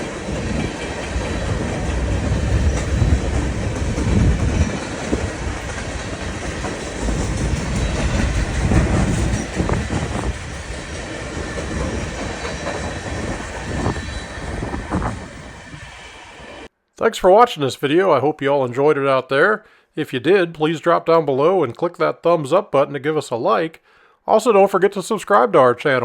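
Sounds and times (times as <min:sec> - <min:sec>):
freight train wheels on rails: 0:00.0 - 0:16.7.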